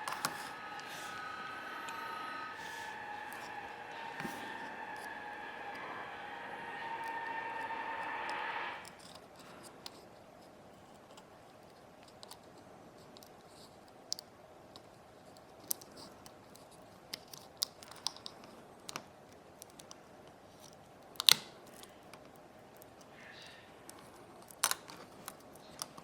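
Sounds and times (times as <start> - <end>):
steady whirring: 0.0 - 8.9
small tools clicking on plastic parts: 11.0 - 23.1.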